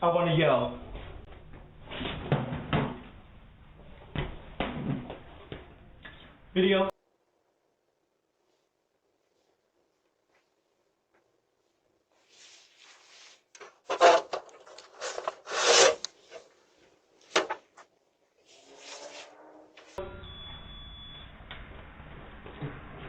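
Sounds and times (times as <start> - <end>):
scraping on microphone: 18.4 - 20.0.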